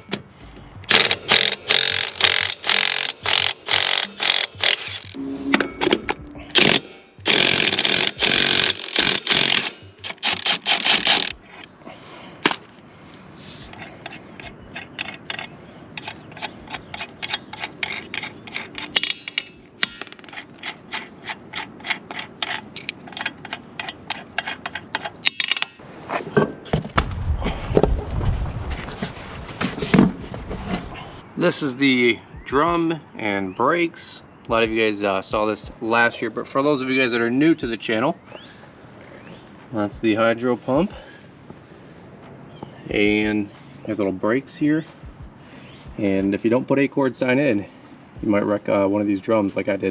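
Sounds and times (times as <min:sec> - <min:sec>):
hand ratchet clicking: 0:00.9 - 0:05.2, 0:07.3 - 0:11.4, 0:13.7 - 0:25.1
power tool bursts: 0:00.9 - 0:05.2.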